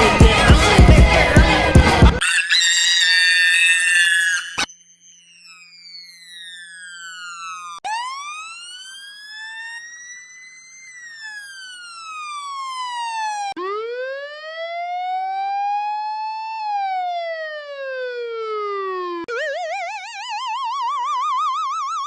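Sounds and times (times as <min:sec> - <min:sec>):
fire truck siren wail: 0:02.2 - 0:04.7, 0:05.3 - 0:13.5.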